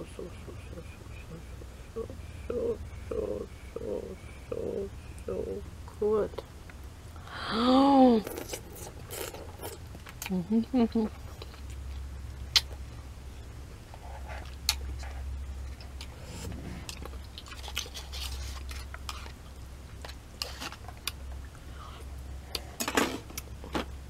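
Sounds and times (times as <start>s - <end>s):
steady low hum: 0.0s - 24.0s
person chewing noodles: 8.2s - 10.3s, 14.2s - 21.2s
wet mouth clicks and smacks: 12.5s - 12.8s.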